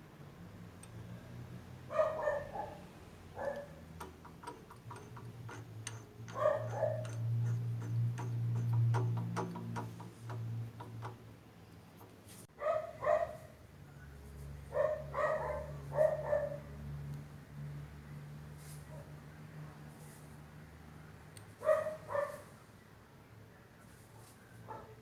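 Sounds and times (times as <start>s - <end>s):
light ticking: 0.6s - 1.3s, 3.4s - 12.2s
dog barking: 1.9s - 2.8s, 3.4s - 3.8s, 6.3s - 7.1s, 12.6s - 13.5s, 14.7s - 16.6s, 21.6s - 22.4s, 24.7s - 25.0s.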